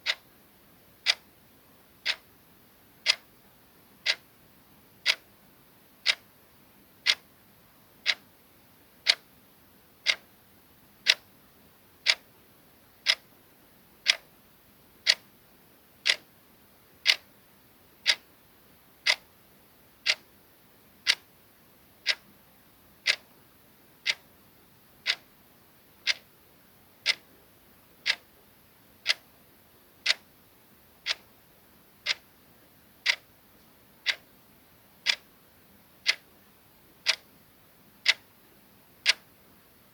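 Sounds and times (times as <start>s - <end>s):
clock ticking: 0.0s - 0.2s, 1.0s - 1.2s, 2.0s - 2.2s, 3.0s - 3.2s, 4.0s - 4.2s, 5.0s - 5.2s, 6.0s - 6.2s, 7.0s - 7.2s, 8.0s - 8.2s, 9.0s - 9.2s, 10.0s - 10.2s, 11.0s - 11.2s, 12.0s - 12.2s, 13.0s - 13.2s, 14.0s - 14.3s, 15.0s - 15.2s, 16.0s - 16.2s, 17.0s - 17.2s, 18.0s - 18.2s, 19.0s - 19.2s, 20.0s - 20.2s, 22.0s - 22.2s, 23.0s - 23.3s, 24.0s - 24.2s, 25.0s - 25.2s, 26.0s - 26.2s, 27.0s - 27.2s, 28.0s - 28.2s, 29.0s - 29.2s, 30.0s - 30.2s, 31.0s - 31.3s, 32.0s - 32.2s, 33.0s - 33.2s, 34.0s - 34.2s, 35.0s - 35.2s, 36.0s - 36.3s, 37.0s - 37.3s, 38.0s - 38.2s, 39.0s - 39.2s.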